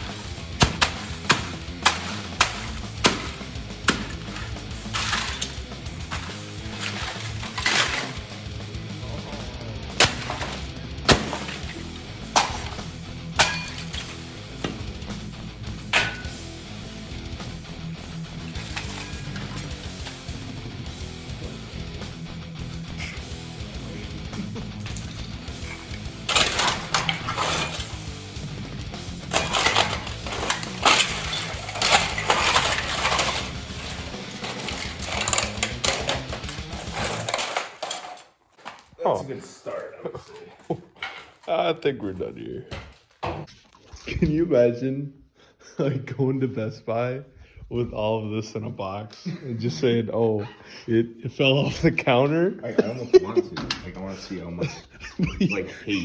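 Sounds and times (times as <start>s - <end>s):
guitar music: 0.0s - 37.1s
loose bits rattling: 0.1s - 9.0s, 9.9s - 20.7s, 23.6s - 38.9s.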